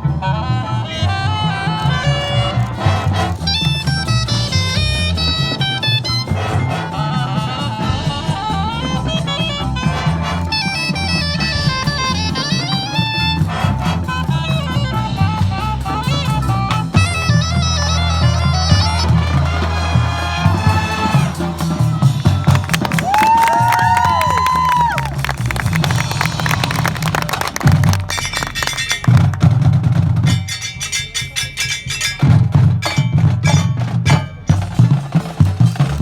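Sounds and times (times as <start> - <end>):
brass playing chords: 0.0 - 23.0
drumline: 0.0 - 36.0.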